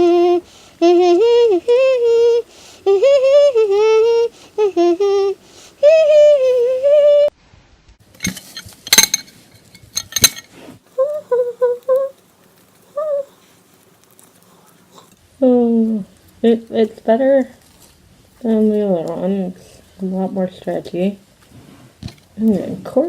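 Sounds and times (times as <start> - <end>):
person humming: 0.0 - 7.3, 10.9 - 12.2, 12.9 - 13.4, 15.0 - 16.6
slime crackling and popping: 11.8 - 15.2.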